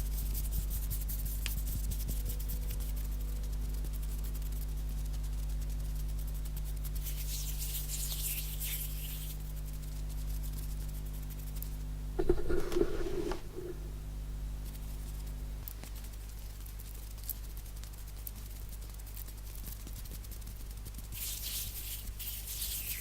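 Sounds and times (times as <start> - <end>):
hands rubbing: 12.2 - 13.9.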